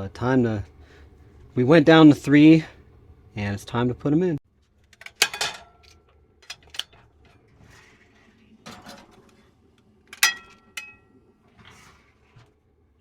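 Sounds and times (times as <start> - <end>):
metal pan clanking: 5.0 - 6.9, 10.1 - 11.1
pan scraping oven rack: 5.0 - 9.5.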